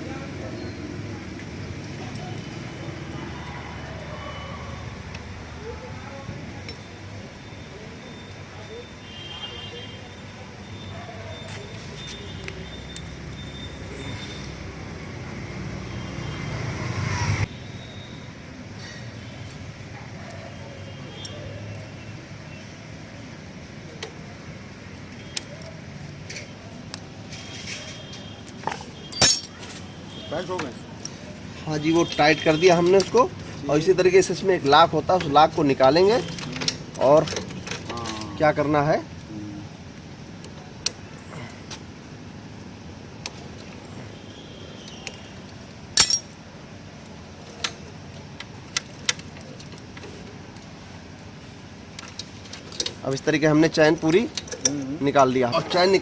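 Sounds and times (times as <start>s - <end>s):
steady background noise: 0.0s - 56.0s
metal chain clinking: 29.1s - 29.7s, 46.0s - 46.4s.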